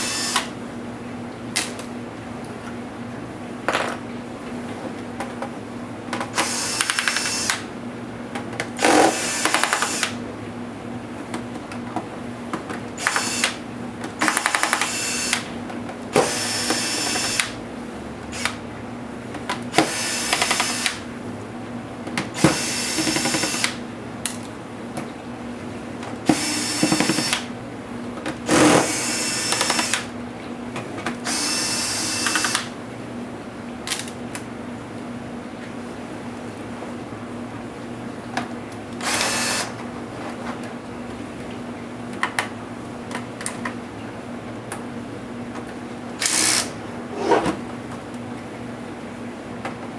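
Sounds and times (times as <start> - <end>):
electric screwdriver motor whining: 0.0 - 0.5, 6.4 - 7.6, 8.8 - 10.1, 13.0 - 13.6, 14.2 - 15.5, 16.2 - 17.5, 22.4 - 23.8, 26.3 - 27.4, 28.5 - 30.1, 31.3 - 32.7, 39.0 - 39.7, 46.2 - 46.8.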